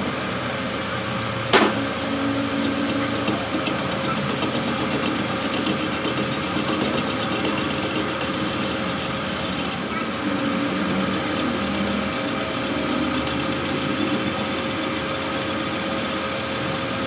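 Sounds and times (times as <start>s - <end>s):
machine running: 1.3s - 17.0s
sharp metallic clank: 1.5s - 2.0s.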